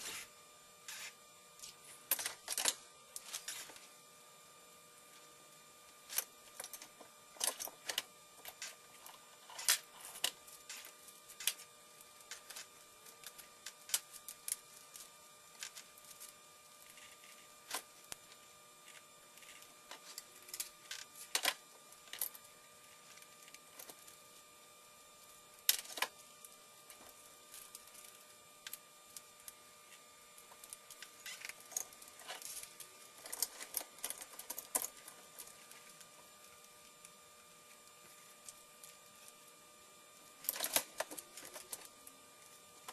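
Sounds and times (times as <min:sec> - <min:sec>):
faint electrical hum: 0:00.0 - 0:42.9.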